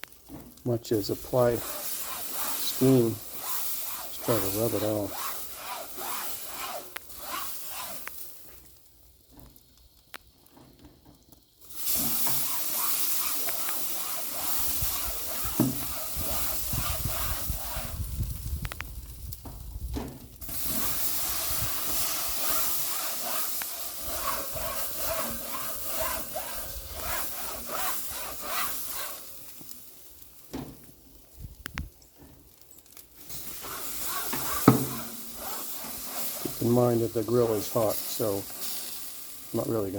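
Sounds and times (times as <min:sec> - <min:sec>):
steam hissing on hot grill: 0:00.0 - 0:08.7, 0:10.4 - 0:19.6, 0:20.2 - 0:30.6, 0:33.2 - 0:39.9.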